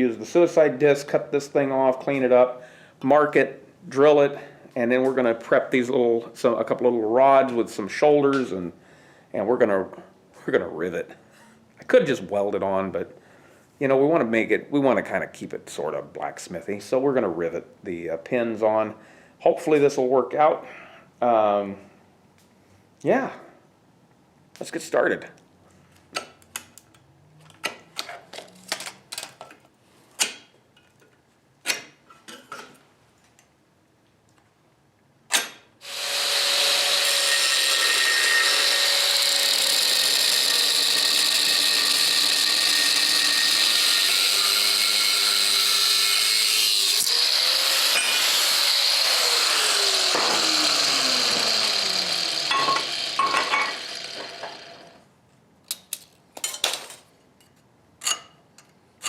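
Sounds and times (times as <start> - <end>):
angle grinder cutting steel: 35.8 - 55.0.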